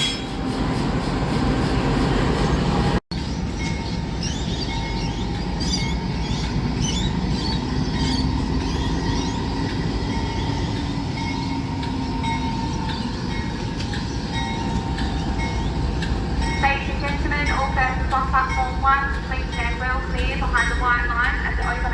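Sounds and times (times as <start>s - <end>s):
locomotive low rumble: 0.0s - 21.9s.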